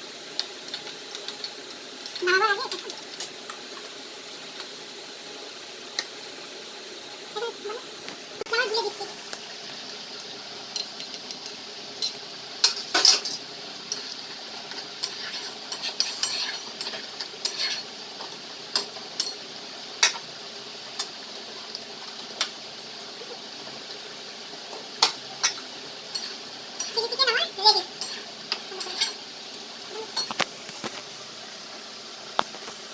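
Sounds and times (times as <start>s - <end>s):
gravy sizzling in a pan: 0.0s - 32.9s
utensil scraping and clinking pan: 12.0s - 19.4s, 25.0s - 27.1s, 27.7s - 29.2s.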